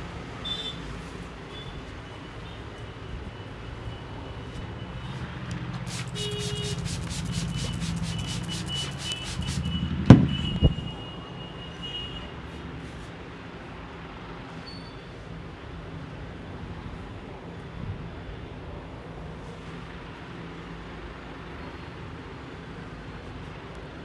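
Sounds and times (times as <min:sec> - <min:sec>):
hands rubbing hair: 0:05.8 - 0:09.8.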